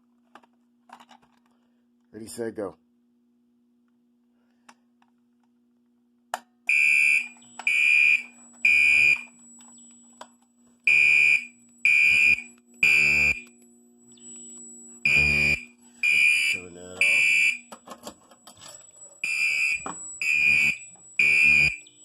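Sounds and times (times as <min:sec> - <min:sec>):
fire alarm horn blasts: 0:06.7 - 0:09.4, 0:10.9 - 0:13.5, 0:15.0 - 0:17.7, 0:19.2 - 0:22.0.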